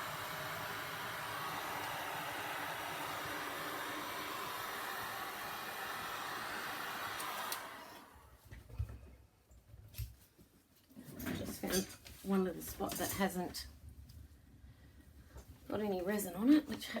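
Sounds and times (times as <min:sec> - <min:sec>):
heat gun blowing: 0:00.0 - 0:08.4.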